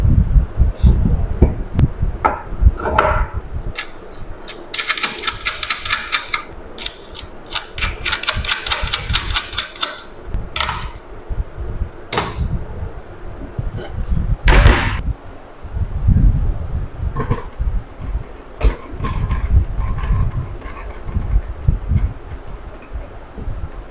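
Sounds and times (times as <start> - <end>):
rapid clicking: 3.8 - 11.0
tool knocks and thuds: 14.5 - 15.0.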